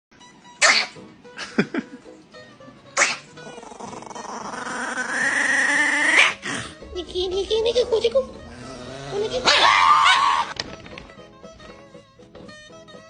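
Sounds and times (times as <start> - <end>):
music: 0.1 - 13.0
small dog yapping: 0.6 - 1.0, 3.0 - 6.6, 9.4 - 10.6
long rising tone: 7.6 - 10.0.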